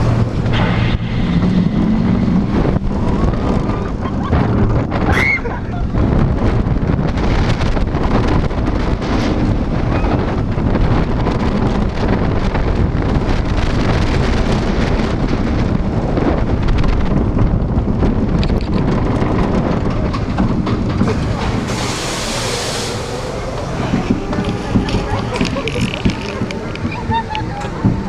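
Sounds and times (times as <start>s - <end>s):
roller coaster wheels rumbling: 0.0s - 28.0s
wind buffeting microphone: 0.0s - 28.0s
hiss: 21.6s - 23.4s.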